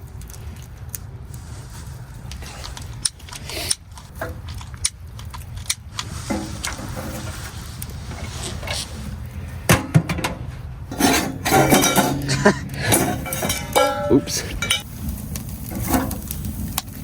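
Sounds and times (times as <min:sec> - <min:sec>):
crackling of burning sticks: 0:00.0 - 0:09.8, 0:10.4 - 0:17.0.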